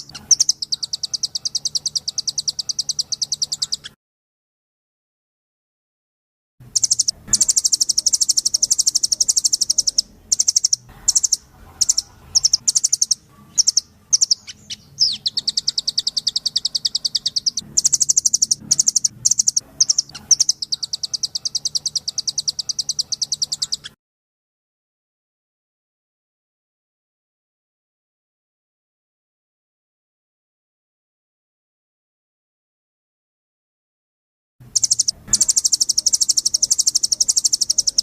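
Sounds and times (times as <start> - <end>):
bird singing rapid trills: 0.0 - 4.0, 6.7 - 24.0, 34.6 - 38.0.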